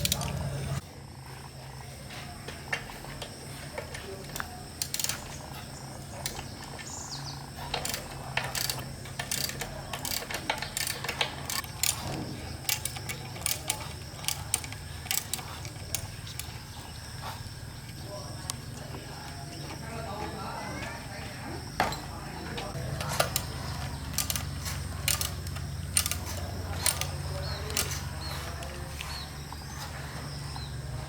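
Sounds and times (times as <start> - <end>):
metallic clicks of hand tools: 0.0 - 0.4, 4.4 - 5.4, 7.7 - 16.6, 22.8 - 29.1
steady low hum: 0.0 - 31.0.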